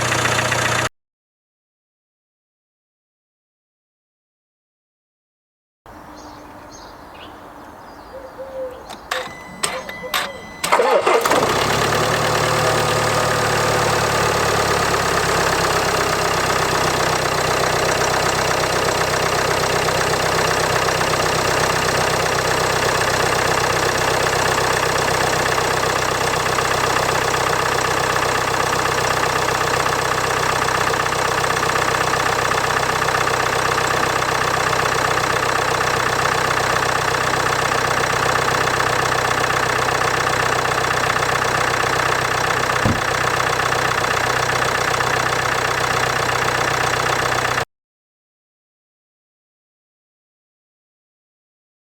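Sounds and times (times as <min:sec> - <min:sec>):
diesel engine idling: 0:00.0 - 0:00.9, 0:08.8 - 0:47.6.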